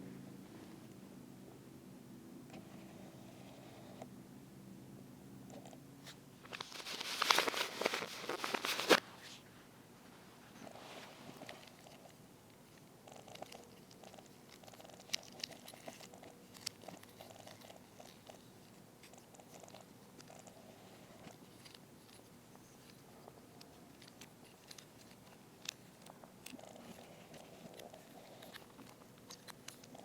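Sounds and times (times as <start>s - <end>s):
faint rustling: 6.0s - 12.2s.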